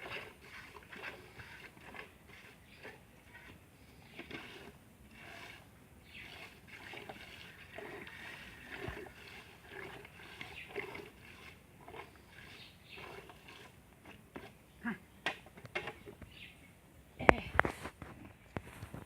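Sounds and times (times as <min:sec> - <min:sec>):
milk squirting into a bucket: 0:00.0 - 0:14.6.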